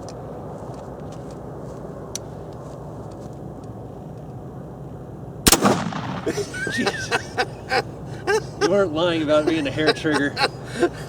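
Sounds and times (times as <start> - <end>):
loud rifle shot: 5.5 - 6.9.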